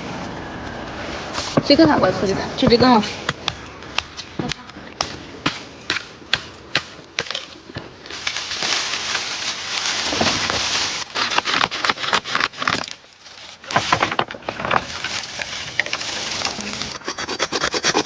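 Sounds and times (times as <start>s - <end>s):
bamboo stems rustling: 7.2s - 17.2s.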